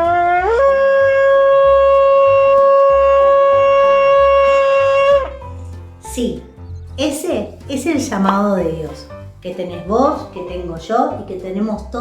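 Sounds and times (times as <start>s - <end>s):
shofar blast: 0.0s - 5.4s.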